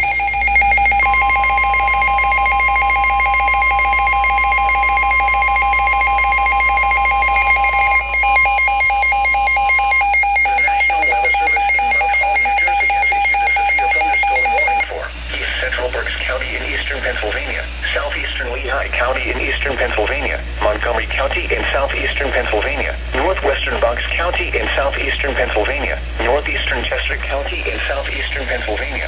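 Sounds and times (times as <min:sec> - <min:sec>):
steady alarm tone: 0:00.0 - 0:29.0
buzzing interference: 0:07.3 - 0:11.6.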